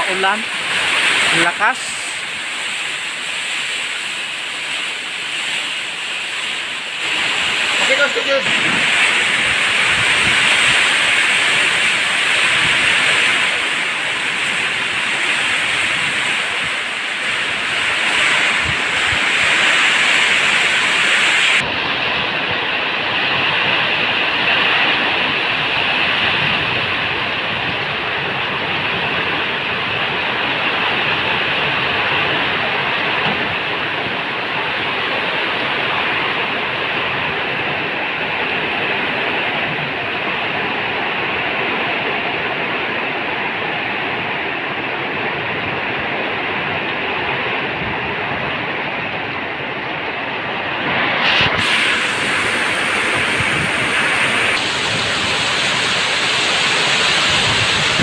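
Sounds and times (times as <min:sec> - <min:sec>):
heavy rain pouring: 0:00.0 - 0:58.0.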